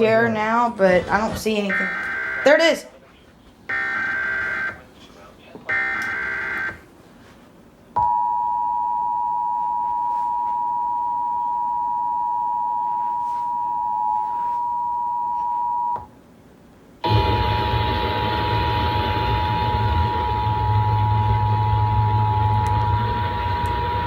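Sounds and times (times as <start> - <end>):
loud noisy sound: 17.0 - 24.0.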